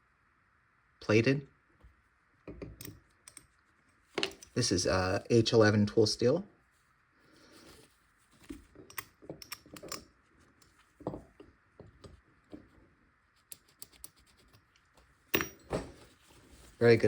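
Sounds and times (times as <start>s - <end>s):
metallic clicks and taps: 2.7s - 3.5s.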